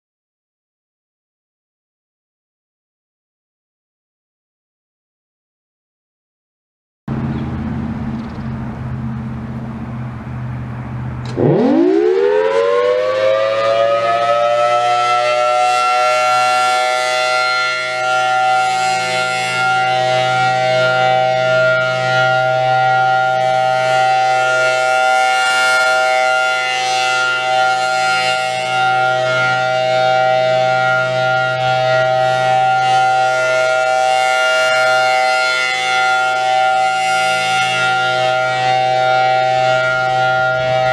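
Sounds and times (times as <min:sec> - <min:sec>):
low hum: 0:07.1 - 0:12.5
warning siren winding up: 0:11.2 - 0:40.9.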